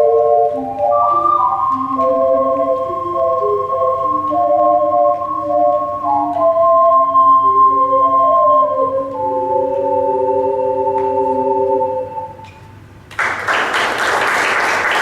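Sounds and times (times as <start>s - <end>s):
ocarina ensemble playing: 0.0s - 13.0s.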